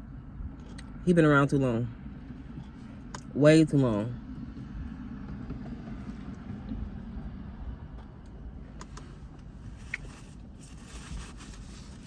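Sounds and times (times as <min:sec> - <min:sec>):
low background rumble: 0:00.0 - 0:12.0.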